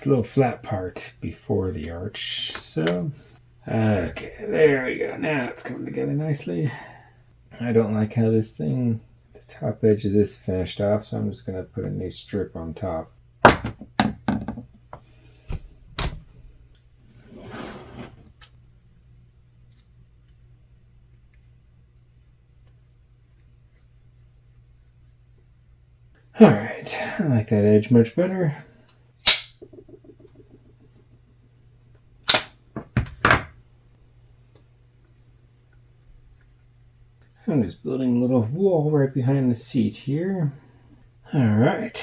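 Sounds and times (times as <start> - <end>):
duct tape ripping: 29.2 - 29.5
tools tapping and clicking: 29.2 - 31.3.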